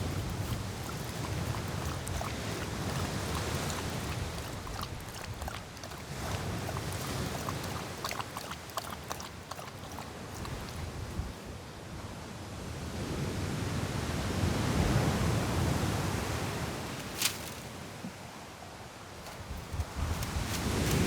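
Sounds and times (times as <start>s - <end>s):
surf washing: 0.0s - 11.5s
wind buffeting microphone: 0.0s - 11.5s, 19.2s - 21.0s.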